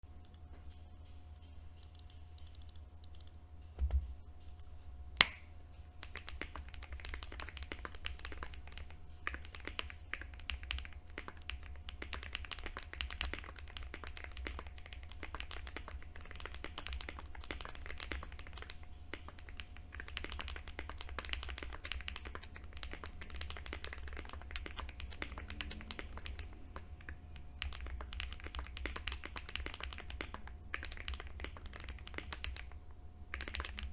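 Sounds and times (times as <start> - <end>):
mechanical keyboard typing: 1.8 - 3.4, 6.1 - 33.9
sharp loud key click: 5.2 - 5.5.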